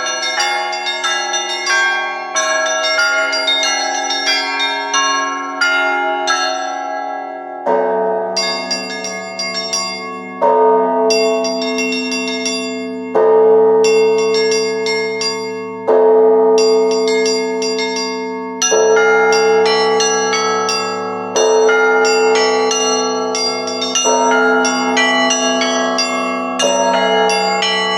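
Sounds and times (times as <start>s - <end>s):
small bells ringing: 0.0s - 7.2s, 8.4s - 27.9s
large deep bell striking: 7.7s - 27.9s.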